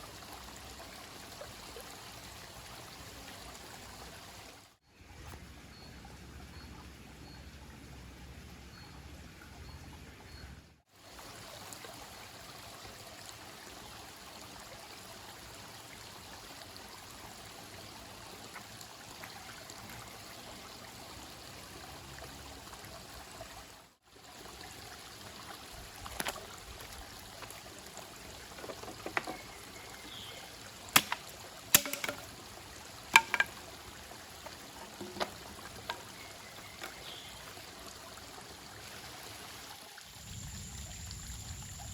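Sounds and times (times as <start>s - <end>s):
running water rushing: 11.0s - 41.9s
sharp clicks and knocks: 28.5s - 29.6s, 30.9s - 32.3s, 33.1s - 33.6s, 34.5s - 36.2s.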